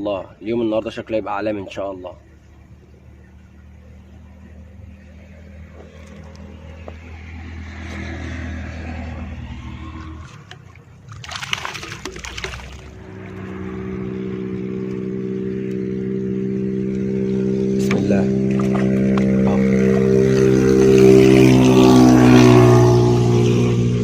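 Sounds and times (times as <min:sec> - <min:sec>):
motor engine humming: 0:02.2 - 0:24.0
water splashing: 0:08.8 - 0:15.1, 0:18.4 - 0:22.8.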